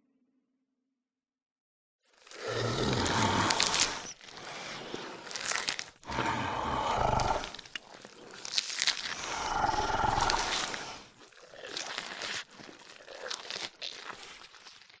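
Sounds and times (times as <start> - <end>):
raspy growls: 2.3 - 12.4
dinosaur roar: 2.4 - 4.0, 6.0 - 7.8, 9.1 - 10.8.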